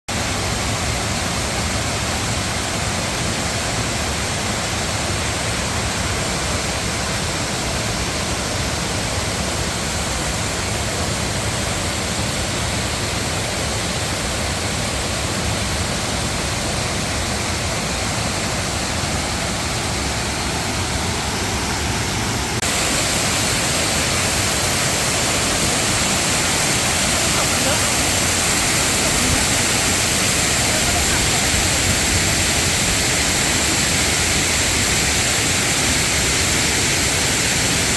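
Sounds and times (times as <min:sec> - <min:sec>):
waterfall rushing: 0:00.1 - 0:37.9.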